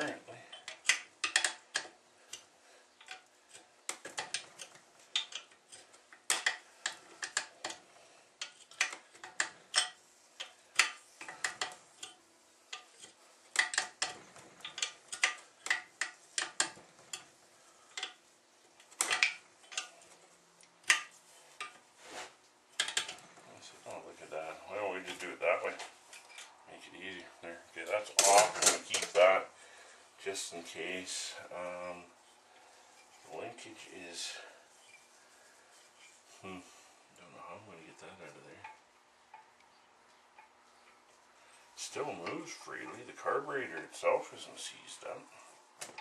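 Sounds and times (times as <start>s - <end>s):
hand tools clinking on metal: 27.8s - 29.4s.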